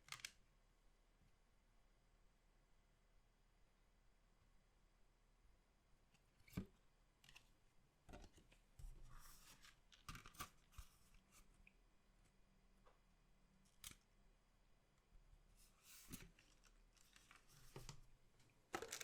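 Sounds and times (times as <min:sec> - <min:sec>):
packaging crinkling and rustling: 0:16.0 - 0:18.1, 0:18.7 - 0:19.0.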